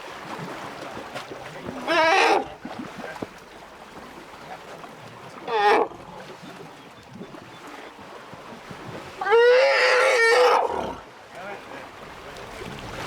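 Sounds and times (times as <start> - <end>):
water splashing: 0.0 - 13.0
elephants trumpeting: 9.2 - 11.0.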